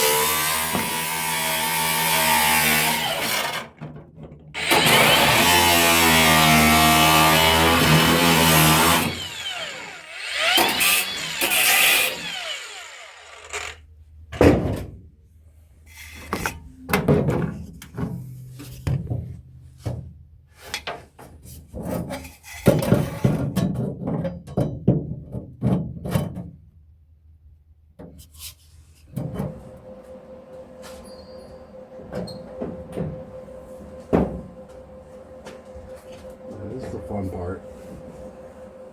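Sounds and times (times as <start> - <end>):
power tool whine: 0.0 - 3.7, 4.6 - 13.8.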